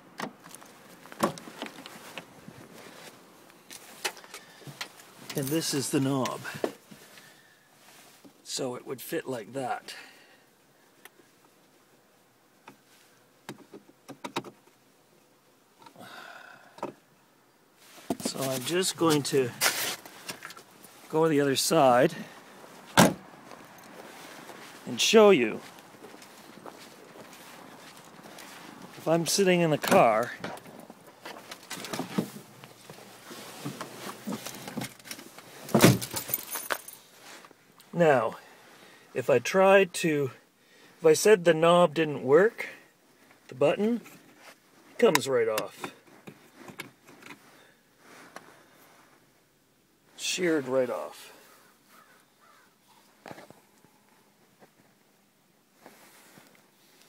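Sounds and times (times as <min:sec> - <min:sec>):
rustling and handling: 0:00.3 - 0:08.4, 0:17.8 - 0:37.9, 0:51.5 - 0:57.0.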